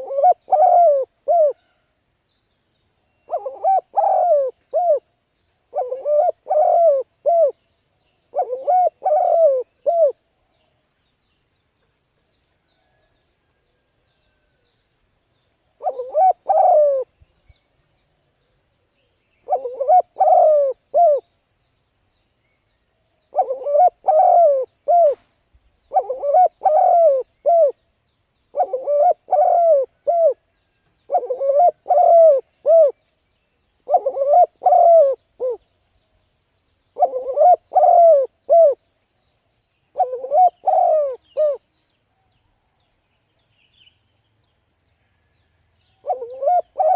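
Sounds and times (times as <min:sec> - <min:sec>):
dove cooing: 0:00.0 - 0:01.8, 0:03.3 - 0:05.1, 0:05.7 - 0:07.6, 0:08.3 - 0:10.2, 0:15.8 - 0:17.1, 0:19.4 - 0:21.2, 0:23.3 - 0:25.2, 0:25.9 - 0:27.8, 0:28.5 - 0:30.4, 0:31.1 - 0:33.0, 0:33.8 - 0:35.6, 0:37.0 - 0:38.8, 0:39.9 - 0:41.6, 0:46.0 - 0:46.9.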